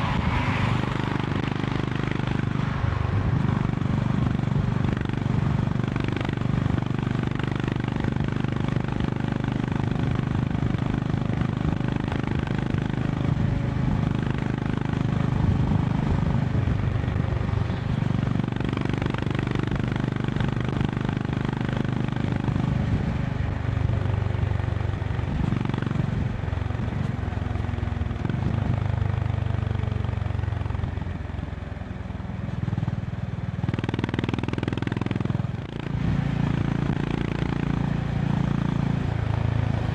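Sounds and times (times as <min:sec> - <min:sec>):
wind noise: 0:00.0 - 0:05.8, 0:15.0 - 0:18.6
motorcycle engine cruising: 0:00.0 - 0:39.9.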